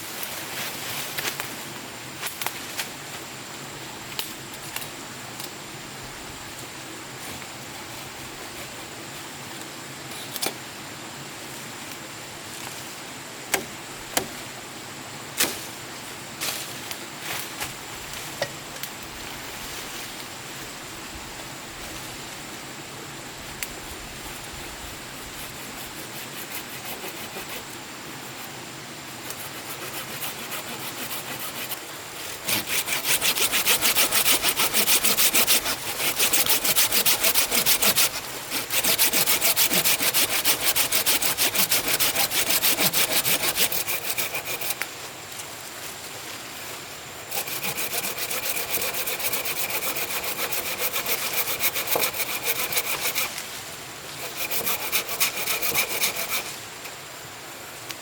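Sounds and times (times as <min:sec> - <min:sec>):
hand saw cutting wood: 0:25.4 - 0:28.5, 0:29.2 - 0:44.9, 0:47.3 - 0:53.5, 0:54.1 - 0:56.6.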